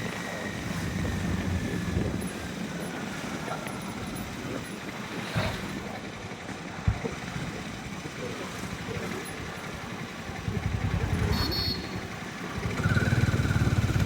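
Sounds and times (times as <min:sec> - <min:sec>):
motorcycle engine cruising: 0:00.0 - 0:14.0
road and traffic noise: 0:00.0 - 0:14.0.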